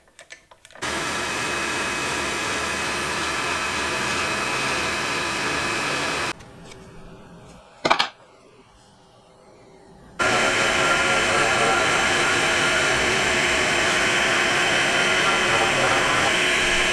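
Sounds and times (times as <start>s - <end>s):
power tool motor running: 0.8s - 6.3s, 10.2s - 16.9s.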